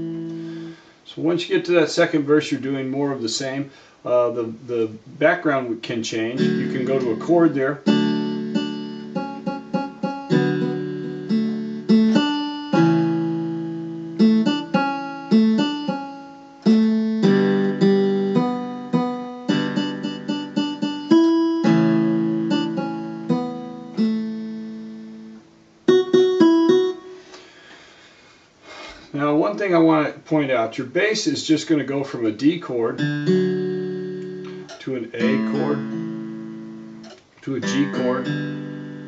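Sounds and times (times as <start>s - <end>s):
electronic keyboard guitar notes: 0.0s - 0.8s, 6.3s - 27.5s, 32.9s - 39.0s.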